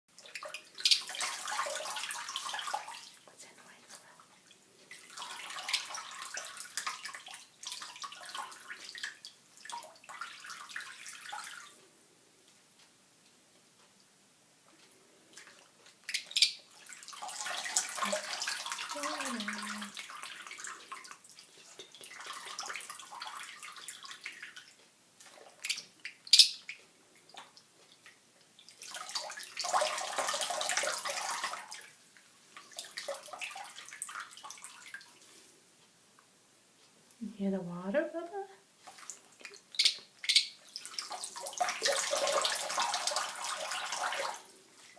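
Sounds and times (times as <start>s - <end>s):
bird mimicking running water: 0.2s - 3.1s, 4.9s - 11.8s, 15.4s - 27.5s, 28.6s - 31.8s, 38.8s - 44.4s.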